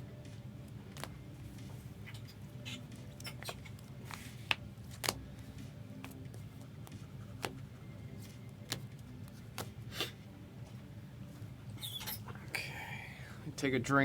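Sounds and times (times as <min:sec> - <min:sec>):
low steady hum: 0:00.0 - 0:14.0
trading cards clicking on table: 0:03.4 - 0:05.2.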